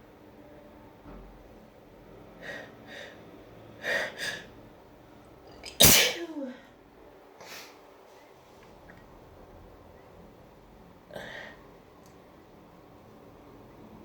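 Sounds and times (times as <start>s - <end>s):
person sneezing loudly: 5.7s - 6.5s.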